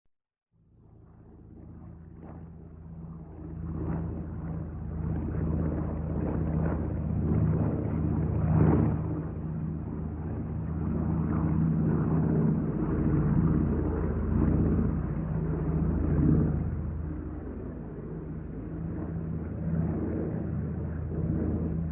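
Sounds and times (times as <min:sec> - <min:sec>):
airplane engine drone: 0:00.6 - 0:21.9.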